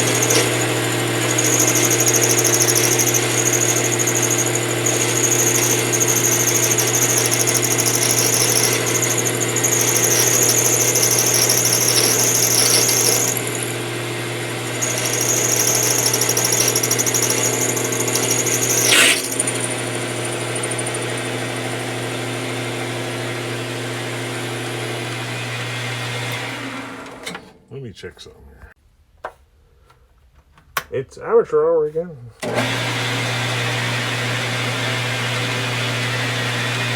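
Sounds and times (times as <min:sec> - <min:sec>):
lathe tool squealing: 0:00.0 - 0:23.6
lathe running hum: 0:00.0 - 0:27.1, 0:32.4 - 0:36.9.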